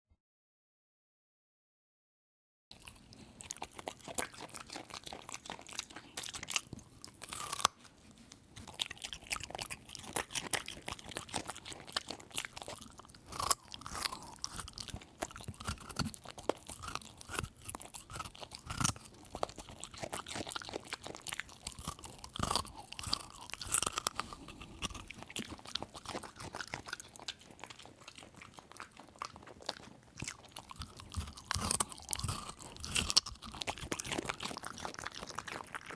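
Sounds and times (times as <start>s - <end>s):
dog crunching food: 2.7s - 35.9s.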